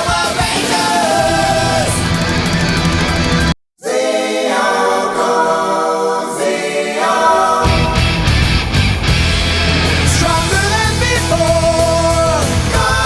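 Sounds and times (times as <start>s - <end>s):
music with singing: 0.0s - 2.9s, 5.7s - 13.0s.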